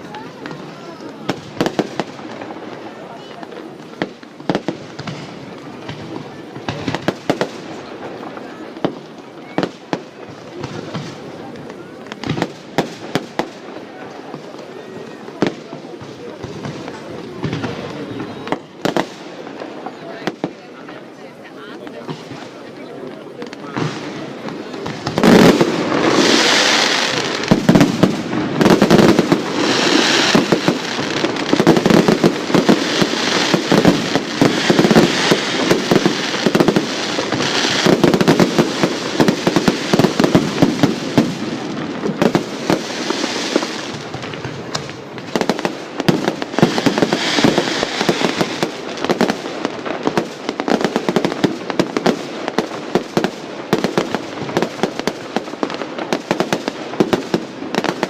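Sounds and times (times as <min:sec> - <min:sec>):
fireworks bangs and crackling: 0:00.0 - 0:58.0.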